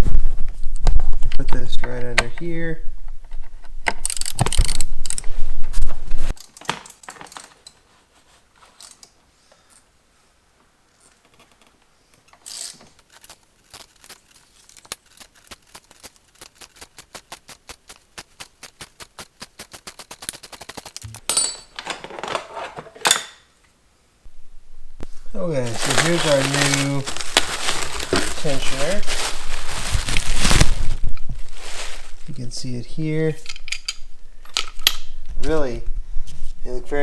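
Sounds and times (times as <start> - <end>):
ratchet wrench clicking: 4.0 - 5.2, 12.4 - 21.2
metal handling noise: 11.2 - 23.5, 25.0 - 32.0, 33.3 - 35.2.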